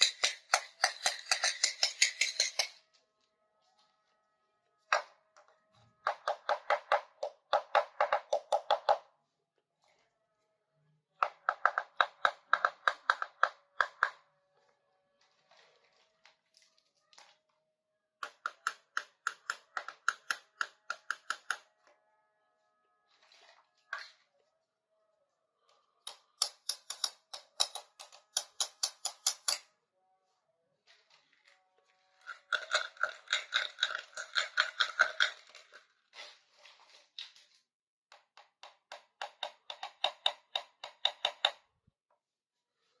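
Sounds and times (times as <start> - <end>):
plastic toy clicks: 32.2 - 35.7.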